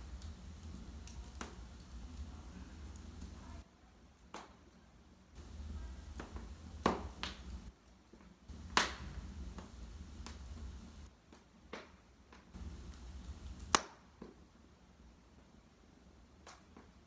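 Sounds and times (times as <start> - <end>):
logs popping: 0.0 - 3.6, 5.4 - 7.7, 8.5 - 11.1, 12.6 - 13.8
wood fire crackling: 0.0 - 3.6, 5.4 - 7.7, 8.5 - 11.1, 12.6 - 13.8.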